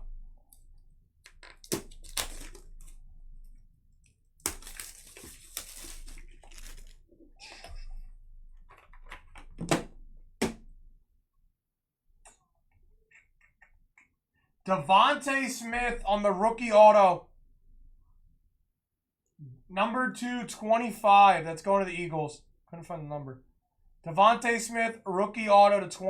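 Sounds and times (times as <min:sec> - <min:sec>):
plastic packaging crinkling: 0:01.4 - 0:03.0, 0:04.4 - 0:07.1.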